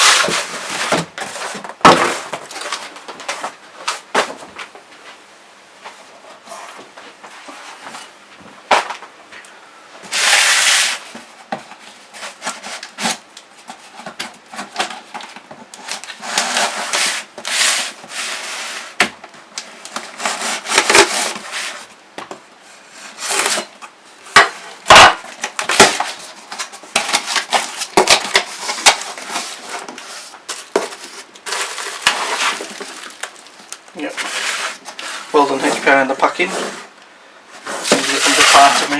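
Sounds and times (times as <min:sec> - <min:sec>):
cardboard ripping: 0:00.0 - 0:04.4, 0:10.1 - 0:11.1, 0:19.9 - 0:21.8, 0:24.4 - 0:36.9, 0:37.6 - 0:38.9.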